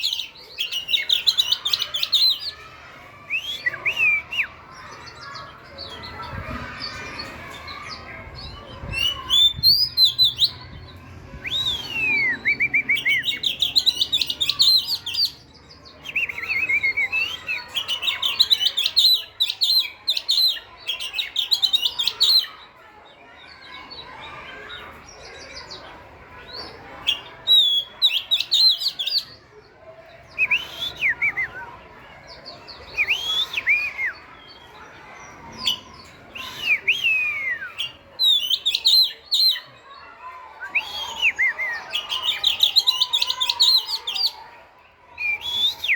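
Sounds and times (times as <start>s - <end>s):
bird singing whistled phrases: 3.3s - 4.6s, 11.4s - 15.4s, 16.1s - 22.5s, 27.1s - 29.2s, 30.4s - 31.8s, 32.9s - 34.6s, 36.4s - 39.7s, 40.6s - 44.2s, 45.2s - 45.9s.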